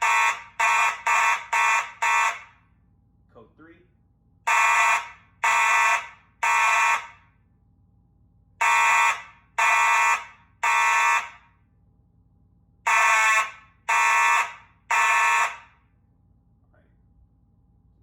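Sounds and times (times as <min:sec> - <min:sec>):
fire alarm horns blasting: 0:00.0 - 0:02.9, 0:04.4 - 0:07.4, 0:08.6 - 0:11.7, 0:12.8 - 0:16.0.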